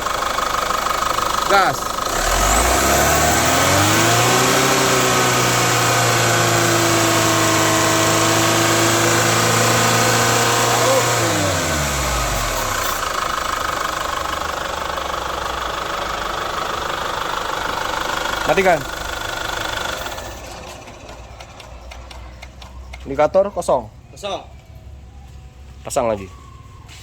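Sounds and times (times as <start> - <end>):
diesel engine revving: 0.0 - 25.6
turbo growling: 2.1 - 13.0.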